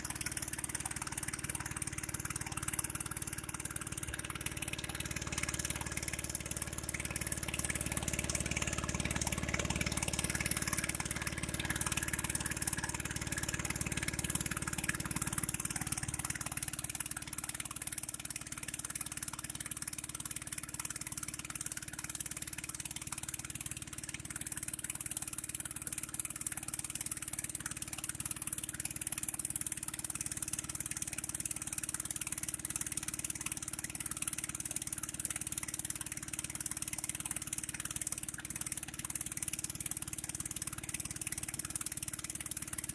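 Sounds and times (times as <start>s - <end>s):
vehicle engine running: 0.0s - 18.0s.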